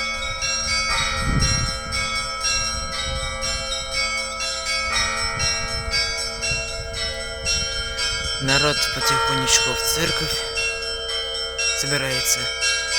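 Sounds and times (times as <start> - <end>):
large bells ringing: 0.0 - 12.9
small high bells struck: 0.0 - 12.9
heavy bell strike: 4.9 - 12.9.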